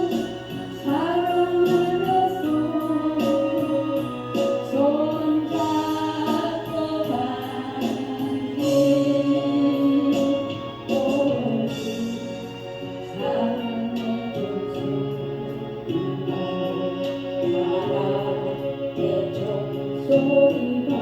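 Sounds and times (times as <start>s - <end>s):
gospel singing: 0.0s - 21.0s
instrumental accompaniment: 0.0s - 21.0s.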